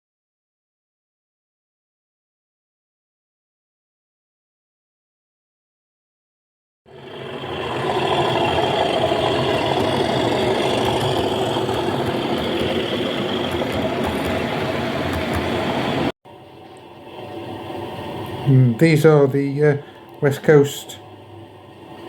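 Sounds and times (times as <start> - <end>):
model train rumbling: 6.9 - 16.1.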